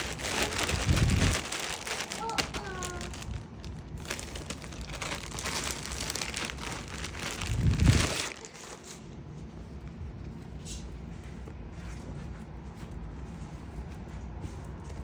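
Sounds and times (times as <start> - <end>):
plastic packaging crinkling: 0.0 - 8.9.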